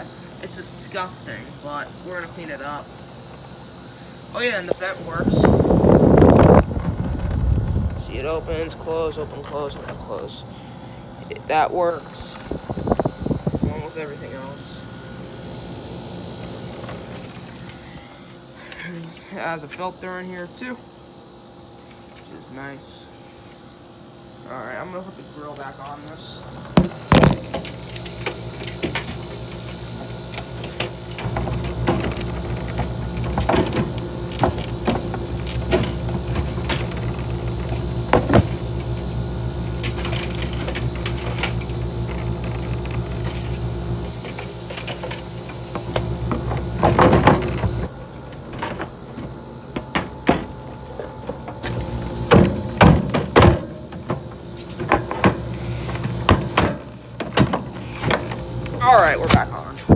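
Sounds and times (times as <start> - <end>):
air conditioner humming: 0.0 - 59.9.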